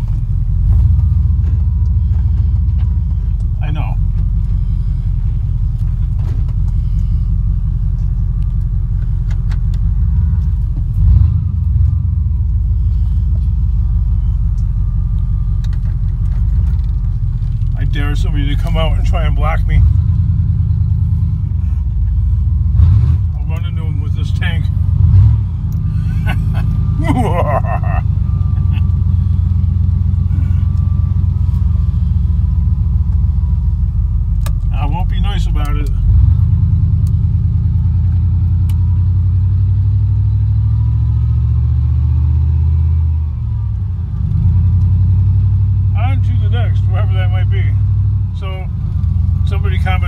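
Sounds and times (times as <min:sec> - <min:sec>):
vehicle jolt: 0:00.0 - 0:46.0
vehicle engine and road noise: 0:00.0 - 0:50.0.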